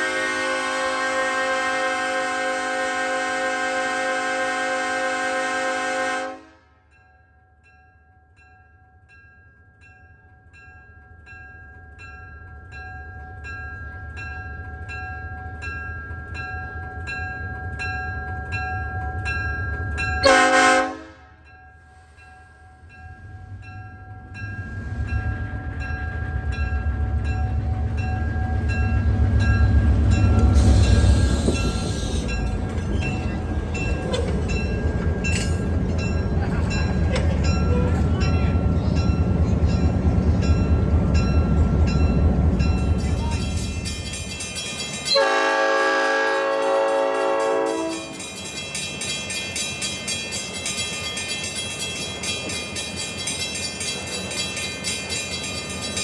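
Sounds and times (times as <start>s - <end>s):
train horn blast: 0.0s - 6.8s, 20.2s - 21.4s, 45.1s - 48.2s
diesel locomotive rumble: 11.2s - 49.1s.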